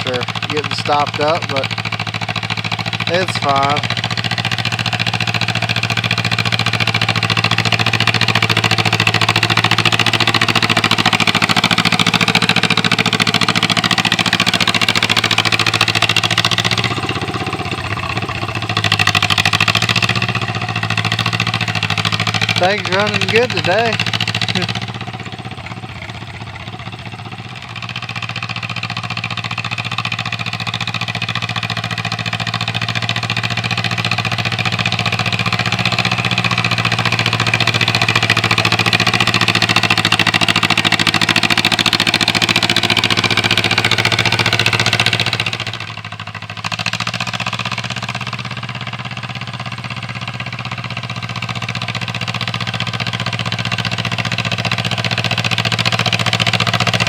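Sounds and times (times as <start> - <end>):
tractor engine running: 0.0 - 57.0.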